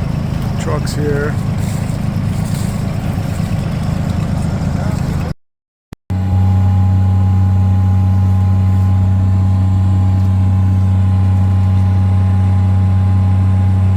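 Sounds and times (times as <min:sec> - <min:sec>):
low machine hum: 0:06.1 - 0:13.9.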